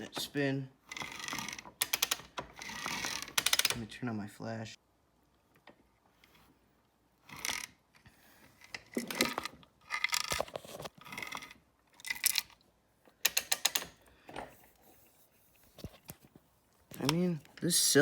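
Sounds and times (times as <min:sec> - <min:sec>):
ratchet clicking: 0:00.9 - 0:03.8.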